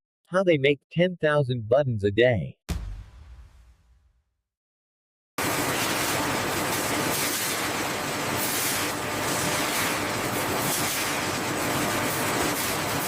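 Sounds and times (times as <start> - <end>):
factory machinery running: 5.4 - 13.0.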